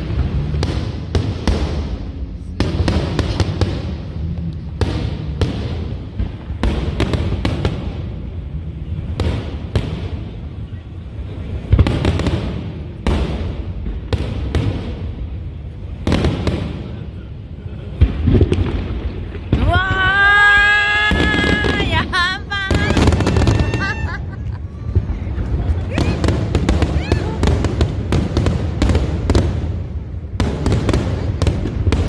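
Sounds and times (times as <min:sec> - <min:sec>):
low rumble: 0:00.0 - 0:11.8, 0:16.8 - 0:30.4
fireworks booming: 0:00.0 - 0:32.0.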